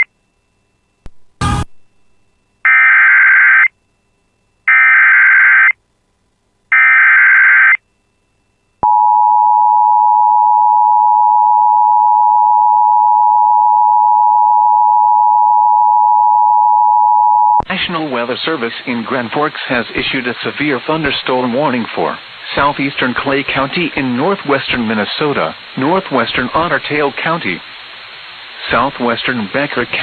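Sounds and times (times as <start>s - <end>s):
static burst: 1.1s - 2.2s
two-tone attention signal: 1.4s - 2.0s.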